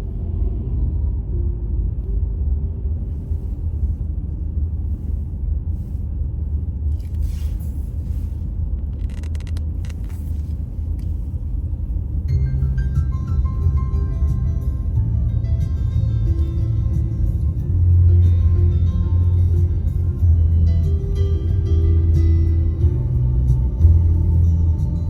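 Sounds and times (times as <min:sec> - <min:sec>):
car driving rumble: 0:00.0 - 0:25.0
music: 0:12.3 - 0:25.0.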